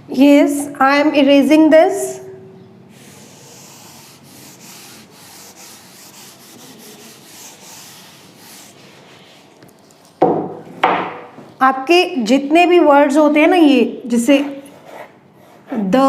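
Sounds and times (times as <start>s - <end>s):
eraser rubbing on board: 2.9s - 9.6s, 14.6s - 15.9s.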